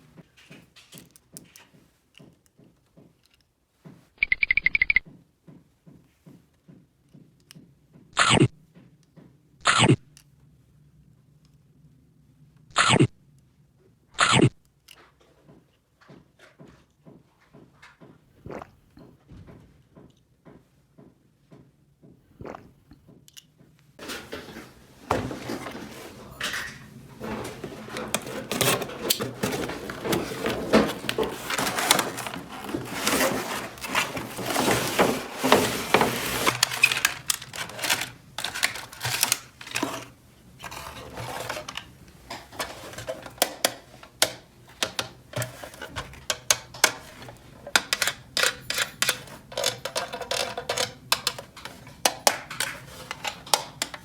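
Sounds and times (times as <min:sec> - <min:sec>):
plastic toy pieces clattering: 0:26.4 - 0:54.0.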